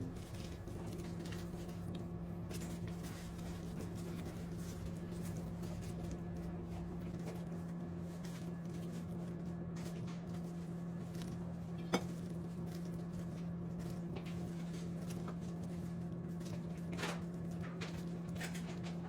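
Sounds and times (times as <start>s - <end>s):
steady low hum: 0.0s - 7.5s.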